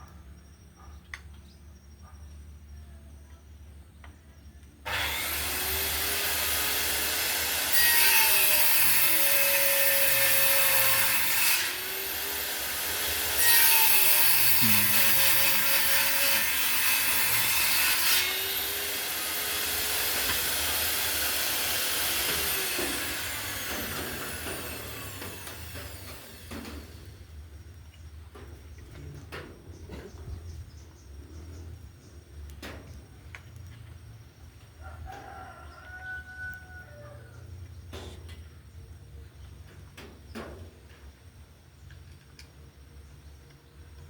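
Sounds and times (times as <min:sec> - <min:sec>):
electric planer cutting wood: 0:04.9 - 0:26.6.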